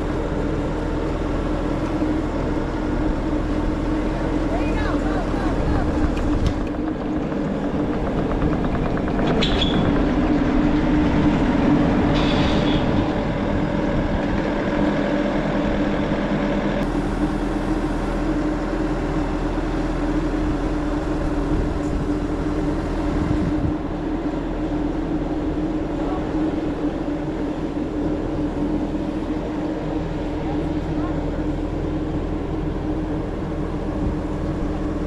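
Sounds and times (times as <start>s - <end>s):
vehicle engine under load: 0.0s - 35.0s
trailer rattles: 3.1s - 16.1s.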